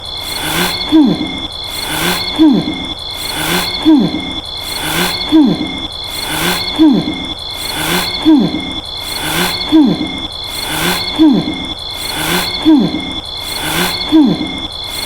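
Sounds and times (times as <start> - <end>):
steady high whine: 0.0 - 15.0
cartoon snoring with falling hoot: 2.0 - 2.8, 3.4 - 4.3, 5.1 - 8.7, 9.4 - 13.1, 13.8 - 14.6.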